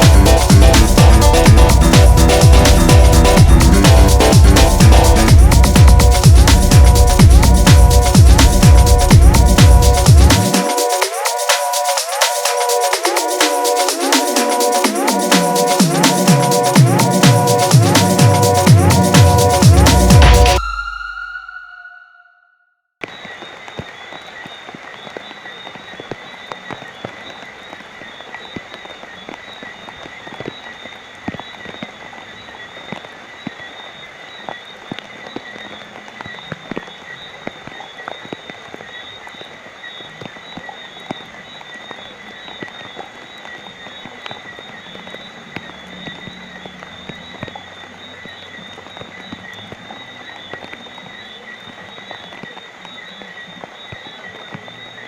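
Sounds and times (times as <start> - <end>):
steady rain falling: 0.0 - 20.6, 23.0 - 55.0
high-pitched chorus: 0.0 - 22.6.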